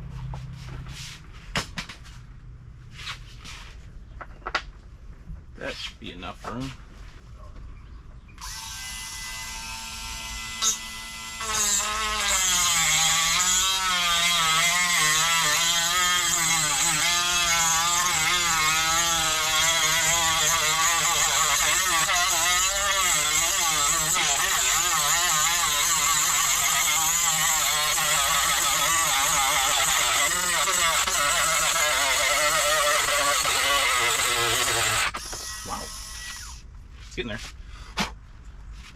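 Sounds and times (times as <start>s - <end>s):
rotary tool whine: 8.4s - 36.6s
cut-off wheel cutting bolt: 10.6s - 36.6s.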